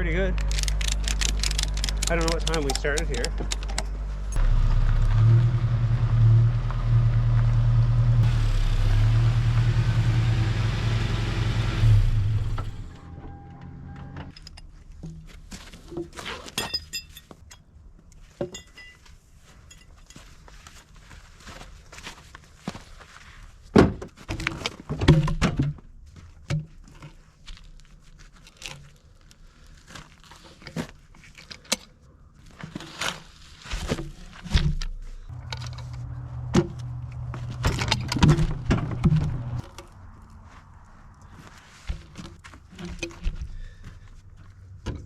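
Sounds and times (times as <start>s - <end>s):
engine running steadily: 0.0s - 14.3s, 35.3s - 39.9s
knocks and clanks of logs: 23.7s - 27.2s, 33.7s - 40.0s, 41.9s - 44.1s
footsteps: 35.2s - 44.8s.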